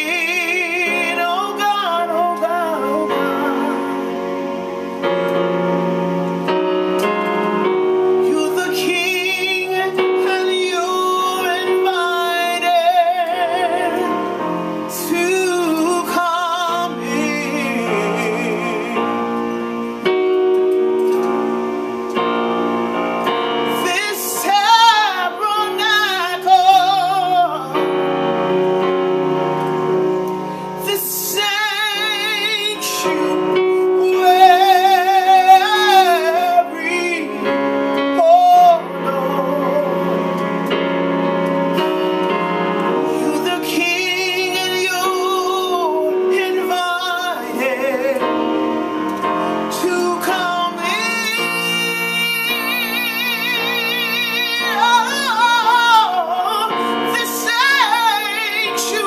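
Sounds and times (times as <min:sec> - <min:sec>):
held keyboard chords: 0:00.0 - 0:59.0
woman singing gospel: 0:08.2 - 0:14.2, 0:14.9 - 0:19.4, 0:23.7 - 0:27.9, 0:30.8 - 0:37.4, 0:43.2 - 0:48.2, 0:49.7 - 0:59.0.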